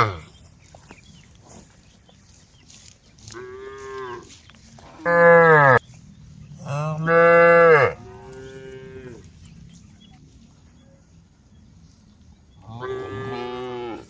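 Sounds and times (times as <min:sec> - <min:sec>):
cows mooing: 0:00.0 - 0:00.2, 0:05.1 - 0:05.8, 0:06.6 - 0:09.3, 0:12.7 - 0:14.0.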